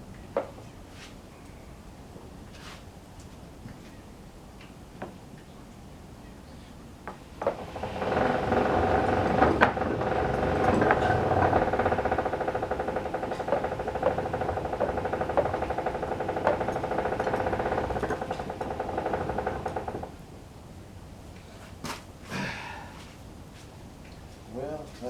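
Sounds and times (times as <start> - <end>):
sawmill carriage whirring: 7.3 - 20.4
metal clanks and rattles: 7.4 - 20.2.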